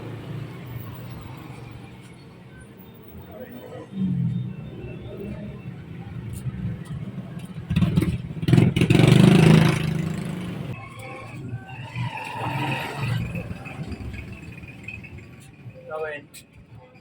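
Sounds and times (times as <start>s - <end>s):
vehicle engine passing by: 7.7s - 10.8s.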